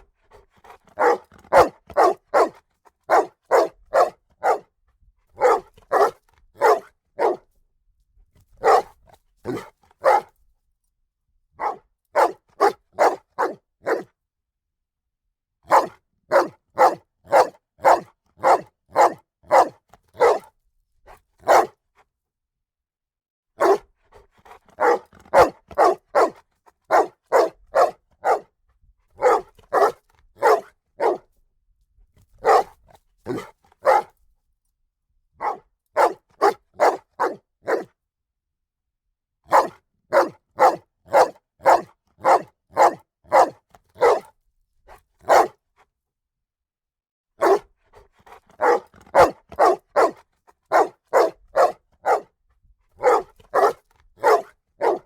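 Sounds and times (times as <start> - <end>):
dog barking: 0.0 - 7.5, 8.6 - 10.4, 11.6 - 14.1, 15.6 - 20.5, 21.1 - 21.8, 23.6 - 28.6, 29.2 - 31.3, 32.4 - 34.2, 35.4 - 38.0, 39.5 - 44.3, 44.9 - 45.6, 47.4 - 52.4, 53.0 - 55.0.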